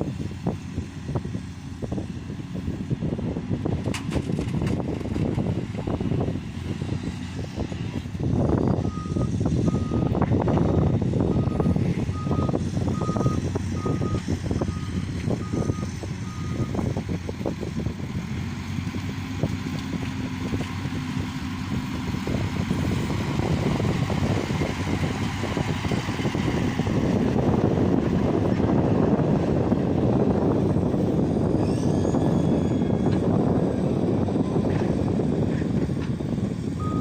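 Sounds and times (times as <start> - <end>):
diesel engine of earthmover: 0.0 - 37.0
reversing alarm beeping: 8.8 - 16.8, 36.8 - 37.0.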